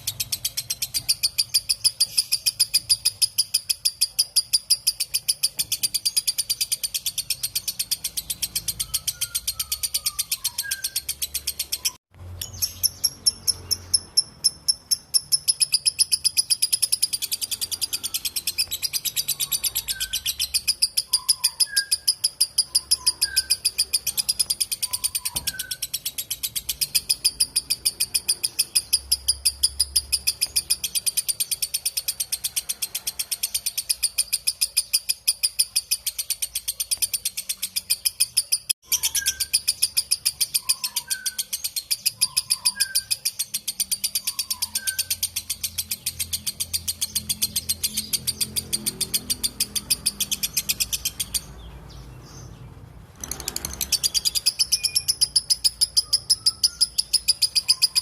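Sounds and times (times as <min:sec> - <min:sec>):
lovebird chattering: 0:00.0 - 0:58.0.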